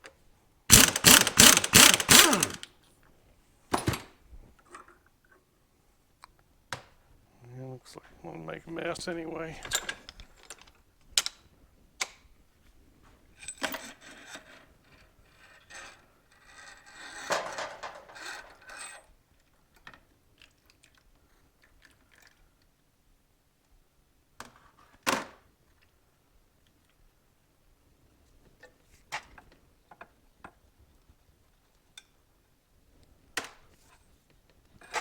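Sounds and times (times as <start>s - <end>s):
metal parts clicking and knocking: 0.7s - 2.7s.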